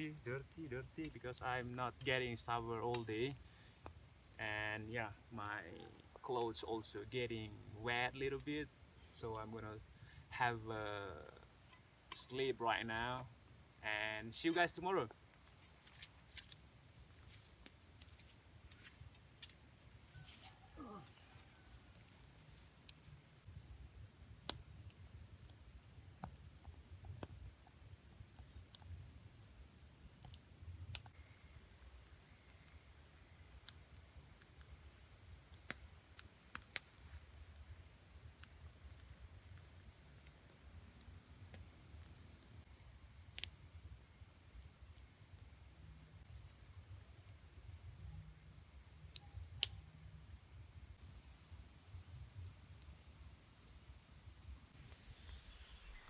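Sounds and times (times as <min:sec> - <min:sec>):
insects trilling: 0:00.0 - 0:55.8
faint sharp clicks: 0:35.5 - 0:37.6.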